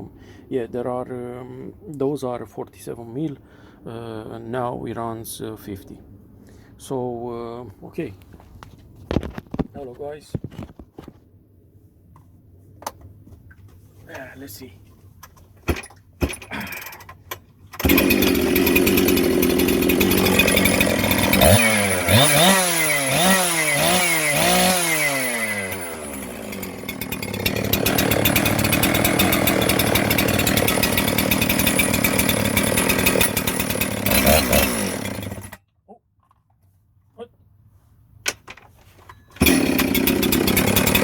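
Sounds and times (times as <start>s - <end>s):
chainsaw revving: 17.8s - 35.6s, 39.4s - 41.0s.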